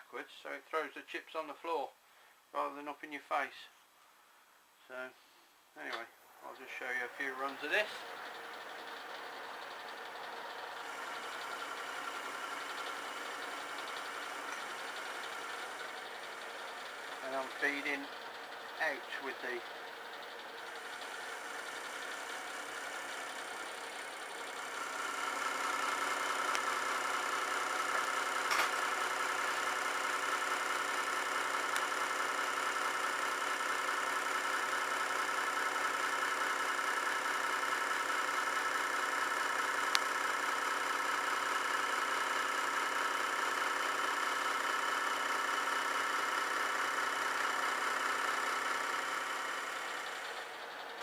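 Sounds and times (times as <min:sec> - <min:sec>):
metal lathe whirring: 0:06.6 - 0:33.2
sharp click: 0:28.5 - 0:28.8.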